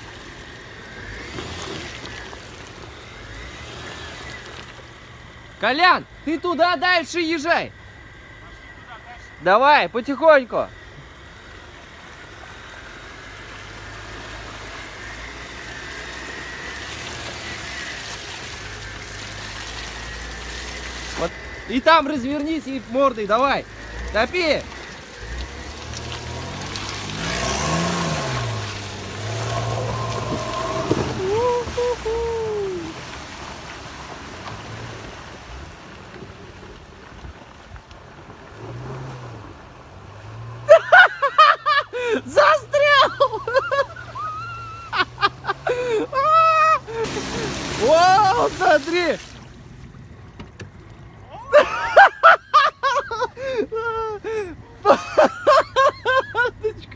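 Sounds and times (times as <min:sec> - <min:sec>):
car engine hum with hiss: 0:00.0 - 0:56.9.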